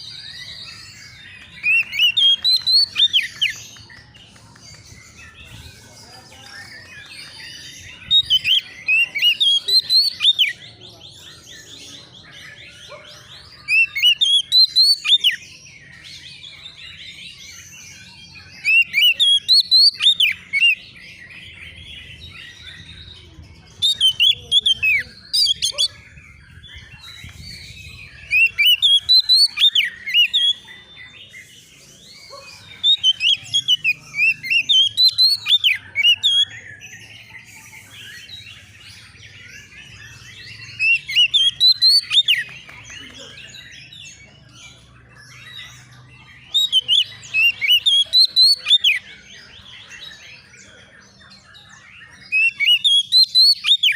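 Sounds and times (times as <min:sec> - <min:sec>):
songbird singing rapid phrases: 0:00.0 - 0:53.9
faint bird chirping: 0:21.6 - 0:53.9.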